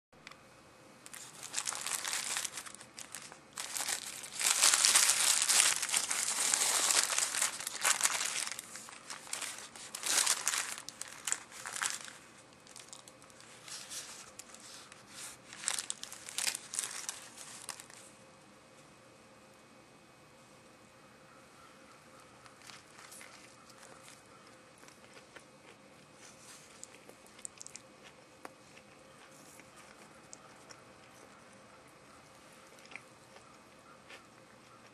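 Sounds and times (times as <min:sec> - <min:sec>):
paper wrapping crinkling: 0:01.1 - 0:18.1, 0:22.4 - 0:25.3.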